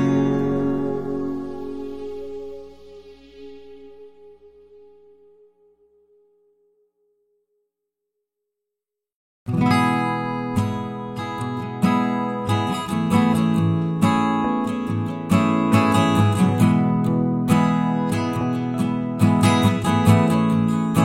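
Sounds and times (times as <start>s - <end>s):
strummed guitar chords: 0.0s - 4.0s, 9.5s - 21.0s.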